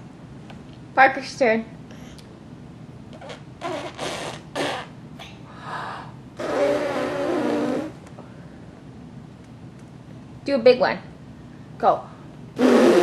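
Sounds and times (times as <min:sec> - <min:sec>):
baby blowing and sputtering: 0:03.1 - 0:05.0, 0:06.4 - 0:08.0, 0:12.6 - 0:13.0.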